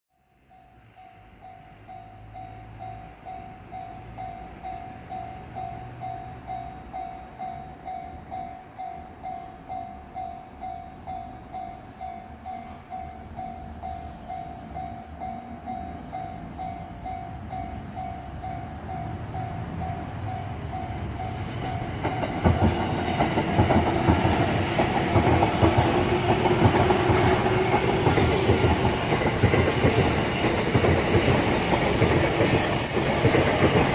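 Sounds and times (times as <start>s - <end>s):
train passing: 0.2s - 33.9s
train wheels clattering: 11.5s - 33.9s.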